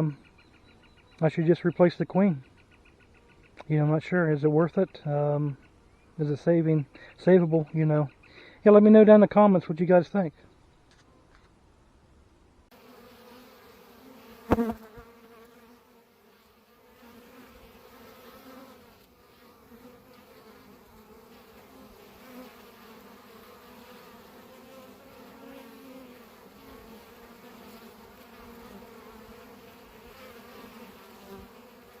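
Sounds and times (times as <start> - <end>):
honey bees buzzing: 12.7 - 32.0.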